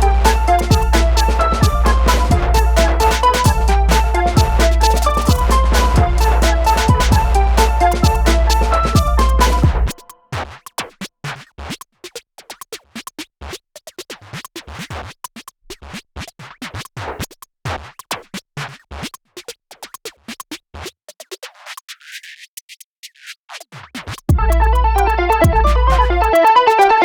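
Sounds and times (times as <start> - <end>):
electronic hip-hop music: 0.0 - 10.2, 24.3 - 27.0.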